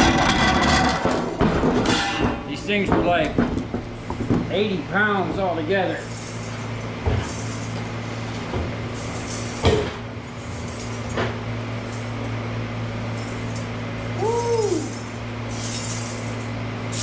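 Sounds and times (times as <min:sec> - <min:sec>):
metal chunk knocking and clunking: 0:00.0 - 0:04.5.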